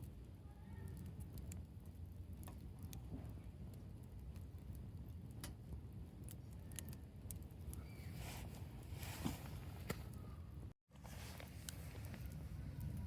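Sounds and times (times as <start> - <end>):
campfire crackling and popping: 0.0 - 8.1, 11.3 - 13.0.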